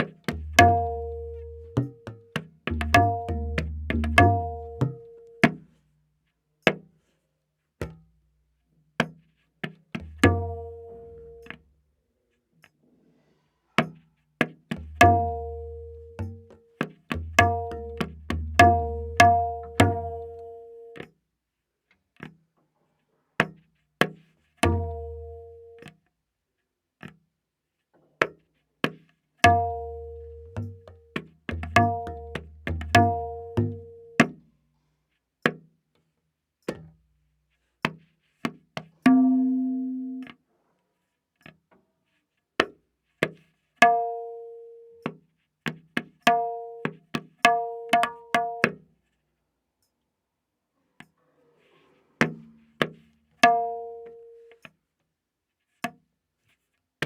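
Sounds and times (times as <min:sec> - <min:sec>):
tabla playing: 0:00.0 - 0:05.7, 0:10.0 - 0:11.6, 0:14.4 - 0:21.0, 0:24.6 - 0:25.9, 0:29.4 - 0:34.4, 0:39.0 - 0:40.3, 0:43.8 - 0:44.6, 0:46.3 - 0:48.8, 0:52.2 - 0:54.3.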